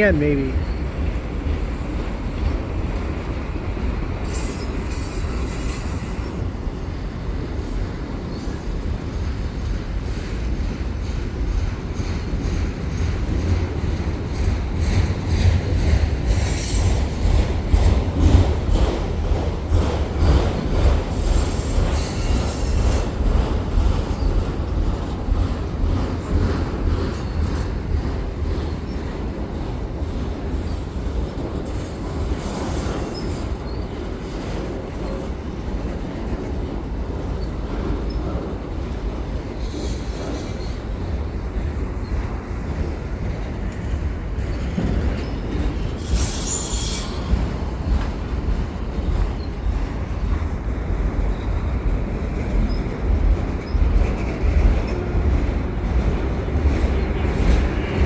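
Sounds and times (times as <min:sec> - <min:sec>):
train wheels rumbling on rail: 0:00.0 - 0:58.0
high-pitched wheel squeals: 0:45.5 - 0:48.1.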